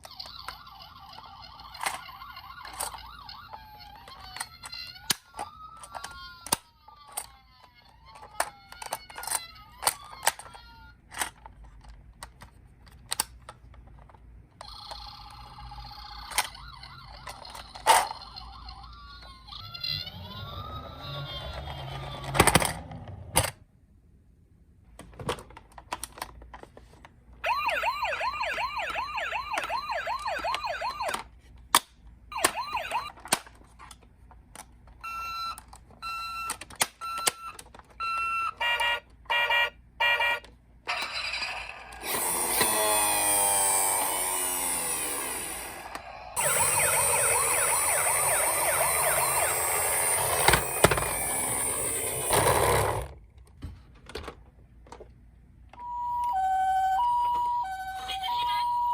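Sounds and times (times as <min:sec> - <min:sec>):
toy electronic sirens: 0:00.0 - 0:10.9, 0:14.6 - 0:22.4, 0:27.4 - 0:31.3, 0:32.3 - 0:33.4, 0:35.0 - 0:53.0, 0:55.8 - 0:58.9
plastic toy clicks and knocks: 0:00.0 - 0:15.3, 0:25.0 - 0:26.9, 0:30.4 - 0:39.0, 0:49.7 - 0:55.1.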